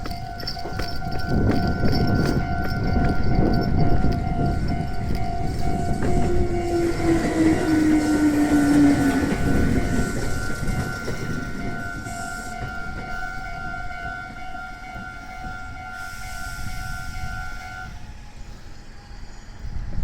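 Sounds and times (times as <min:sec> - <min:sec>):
level crossing bell ringing: 0:00.0 - 0:16.0
train rumble: 0:00.0 - 0:20.0.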